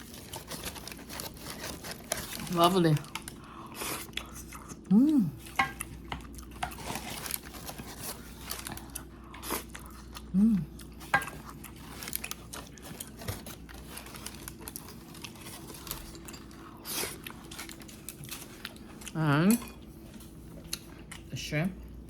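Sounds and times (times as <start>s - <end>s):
person chewing food: 0.0s - 22.0s
person humming: 4.9s - 5.5s, 10.3s - 10.8s.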